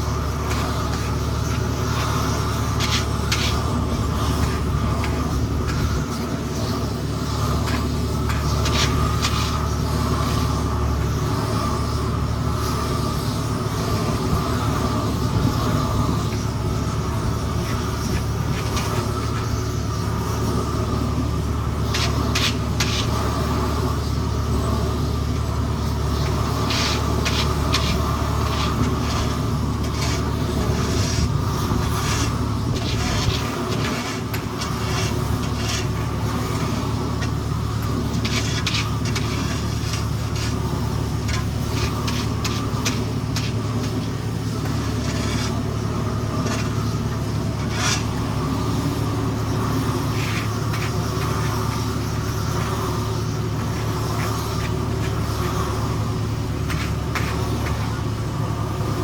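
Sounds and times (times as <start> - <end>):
heavy machinery engine humming: 0.0 - 59.0
short scrapes: 0.3 - 10.7, 25.8 - 56.0.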